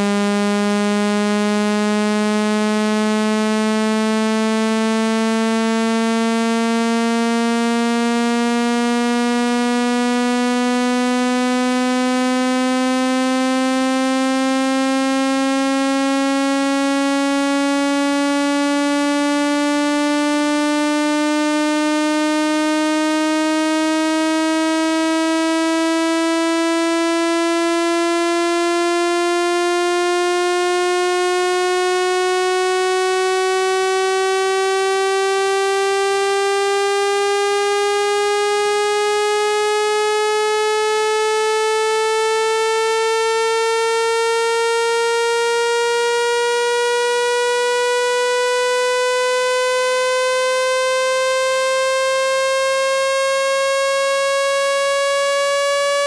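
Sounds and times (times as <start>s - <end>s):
buzzy synthesized rising tone: 30.6s - 56.0s.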